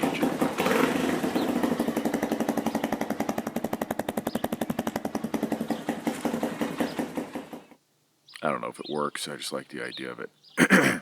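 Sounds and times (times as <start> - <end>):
motorcycle engine idling: 0.0 - 7.8.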